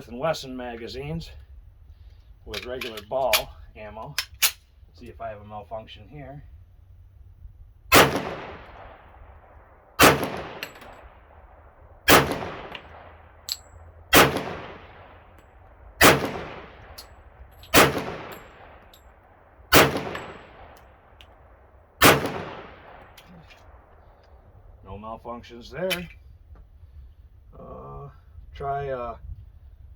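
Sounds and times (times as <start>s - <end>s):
pistol shots with echo: 7.9s - 11.2s, 12.1s - 13.4s, 14.1s - 15.4s, 16.0s - 17.1s, 17.7s - 18.8s, 19.7s - 20.8s, 22.0s - 23.8s.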